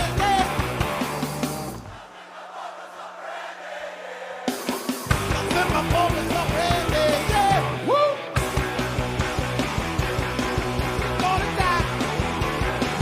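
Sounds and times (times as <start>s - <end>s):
punk rock band playing live: 0.0s - 1.9s, 4.5s - 13.0s
person singing and yelling: 5.2s - 8.4s, 11.2s - 12.0s.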